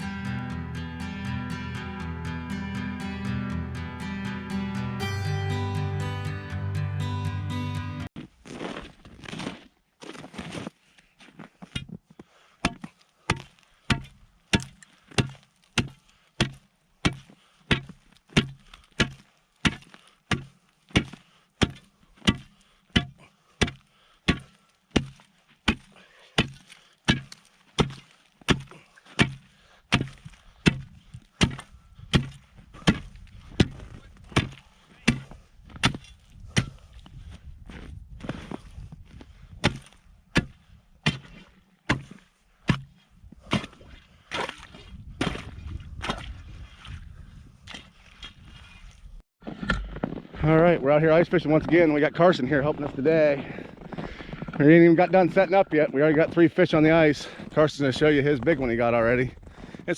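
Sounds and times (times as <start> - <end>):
tool chopping ice: 12.6 - 36.8, 39.6 - 46.3.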